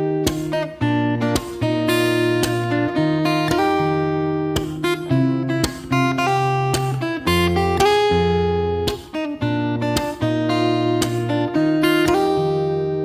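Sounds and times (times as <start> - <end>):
acoustic guitar music: 0.0 - 13.0.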